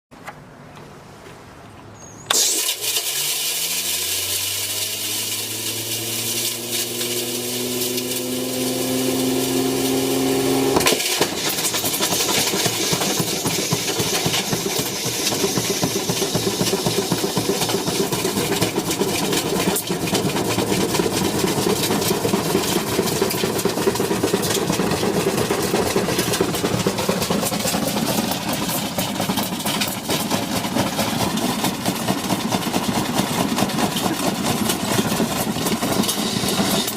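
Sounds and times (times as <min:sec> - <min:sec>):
washing machine motor whine: 0:02.3 - 0:11.6
sharp crack: 0:02.3 - 0:20.2
washing machine rattling: 0:11.3 - 0:36.9.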